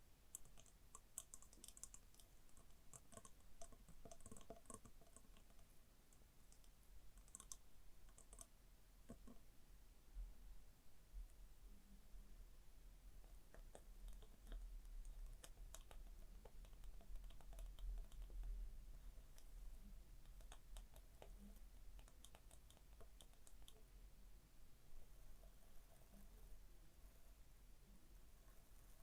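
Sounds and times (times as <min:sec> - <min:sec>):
gentle tapping clicks: 0:20.2 - 0:23.8.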